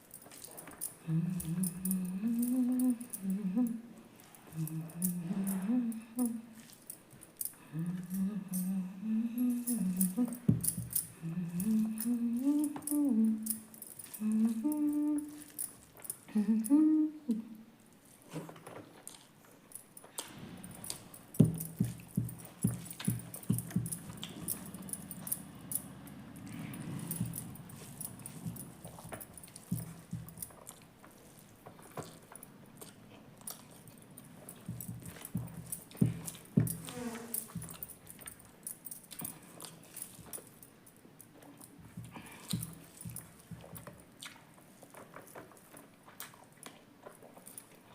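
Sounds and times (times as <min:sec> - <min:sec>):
person chewing food: 0:00.0 - 0:16.9, 0:17.9 - 0:47.9
person humming a slow tune: 0:01.0 - 0:06.6, 0:07.6 - 0:15.7, 0:16.3 - 0:17.7, 0:20.7 - 0:30.4, 0:34.3 - 0:37.9.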